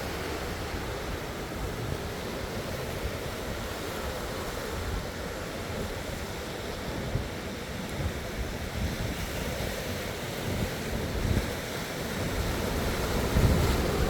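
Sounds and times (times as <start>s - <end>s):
ocean waves washing in: 0.0s - 14.0s
wind gusting on microphone: 0.0s - 14.0s.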